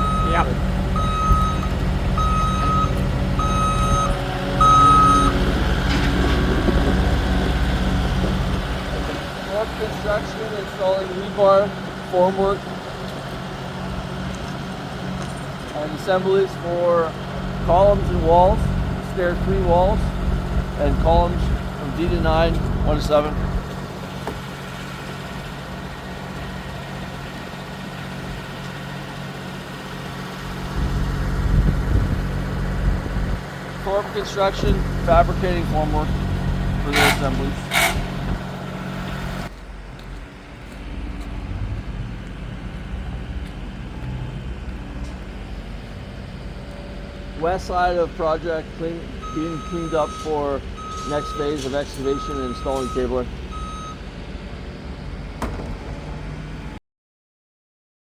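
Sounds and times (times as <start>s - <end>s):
vehicle backup alarm beeps: 0.0s - 7.3s, 49.0s - 54.0s
low engine rumble: 0.0s - 56.8s.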